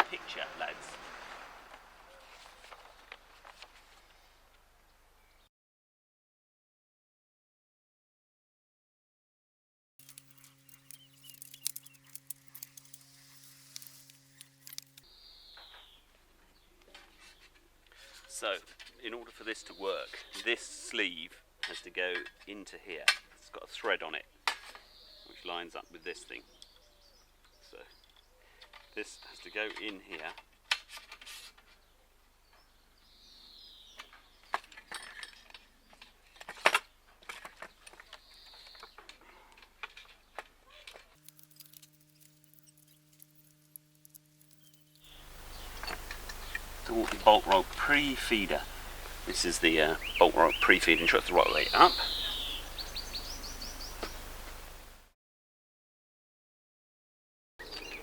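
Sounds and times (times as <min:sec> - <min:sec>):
metallic clicks of tools handled: 0:10.0 - 0:15.0, 0:41.2 - 0:45.2
falling bird chirp: 0:10.0 - 0:16.1, 0:41.2 - 0:54.9
steady low hum: 0:41.2 - 0:55.0.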